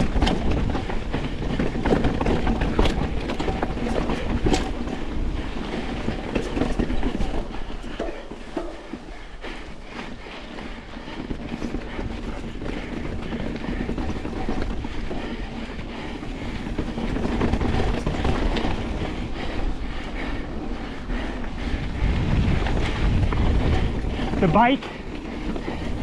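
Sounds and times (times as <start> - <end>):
bike rattling knocks: 0.0 - 9.5
bike tyres on rock: 0.0 - 26.0.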